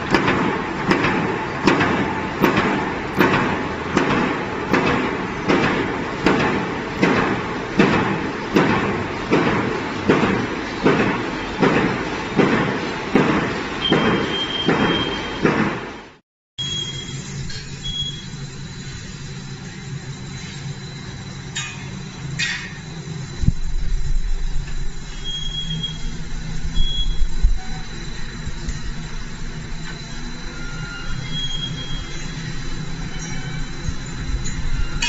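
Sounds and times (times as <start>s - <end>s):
stamping press knocking: 0.0s - 15.9s
machine running noise: 0.0s - 35.0s.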